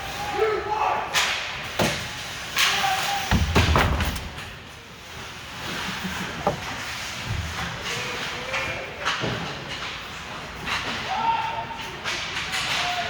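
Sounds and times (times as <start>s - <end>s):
puck and sticks hitting boards: 1.1s - 4.8s, 6.1s - 13.0s.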